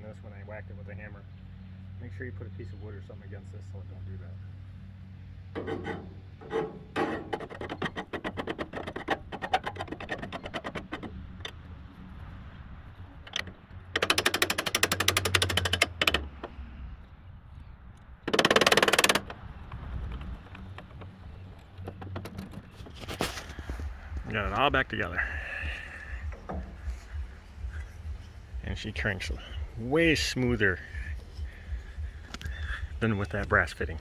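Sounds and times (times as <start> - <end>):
rapid even clicks: 5.6 - 12.0, 13.0 - 16.6, 18.2 - 34.0
hand tools clicking on metal: 13.3 - 16.5, 18.3 - 34.0.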